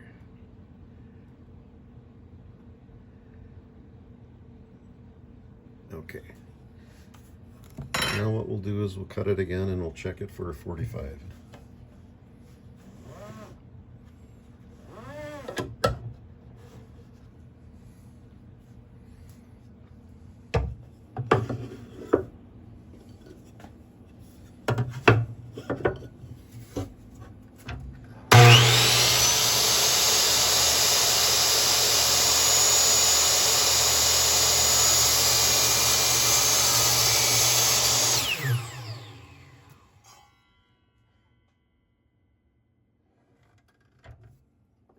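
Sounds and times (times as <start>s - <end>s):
miter saw motor whine: 28.3s - 40.4s.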